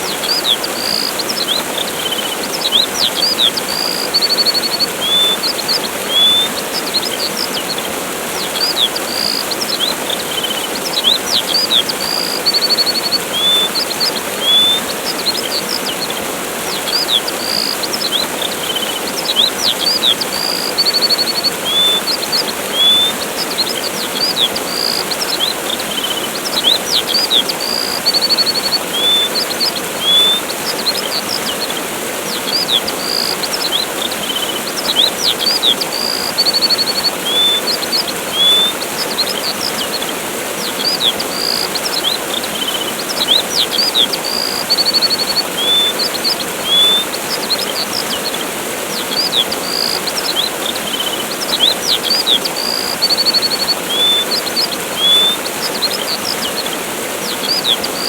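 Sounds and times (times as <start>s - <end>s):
buzzy bird trill: 0.0s - 58.0s
small birds chirping: 0.0s - 58.0s
waterfall rushing: 0.0s - 58.0s.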